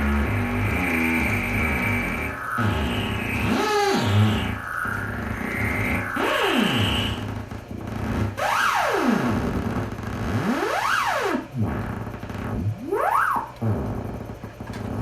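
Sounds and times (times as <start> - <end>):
synthesizer tone sweeping in pitch: 0.0 - 12.0.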